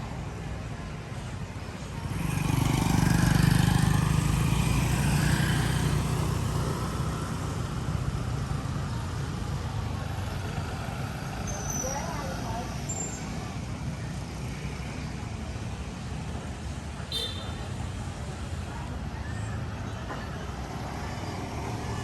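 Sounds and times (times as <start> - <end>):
background traffic noise: 0.0 - 22.0
vehicle engine passing: 2.0 - 8.1.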